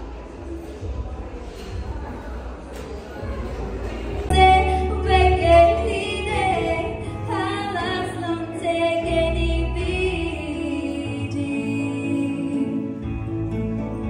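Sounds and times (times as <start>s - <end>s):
musical accompaniment: 4.2s - 14.0s
woman singing: 4.3s - 13.2s.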